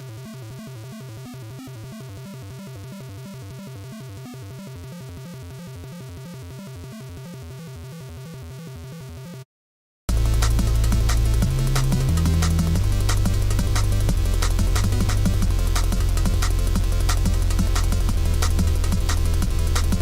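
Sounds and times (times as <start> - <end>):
music with pulsing beat and bass: 10.1 - 20.0.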